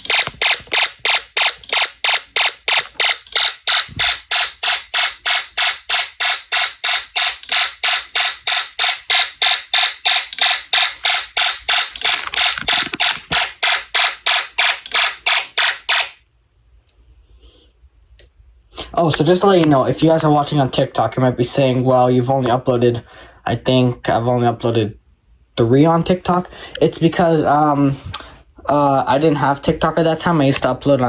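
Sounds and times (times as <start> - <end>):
fire alarm pulsing: 0.0 - 12.5, 13.4 - 16.2.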